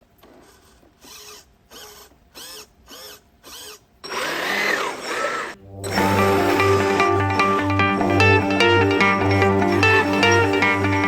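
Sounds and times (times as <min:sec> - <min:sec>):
small electric motors whirring: 0:00.2 - 0:05.6
guitar music: 0:05.6 - 0:11.0.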